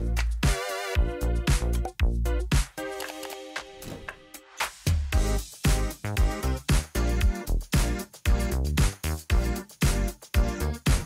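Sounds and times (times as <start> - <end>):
electronic dance music: 0.0 - 1.8, 4.5 - 11.0.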